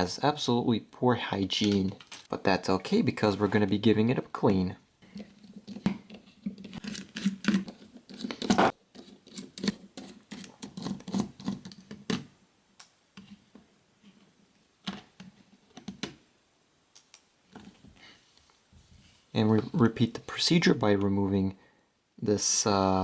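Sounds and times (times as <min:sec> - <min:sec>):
plastic clicks and scrapes: 0:05.0 - 0:13.4.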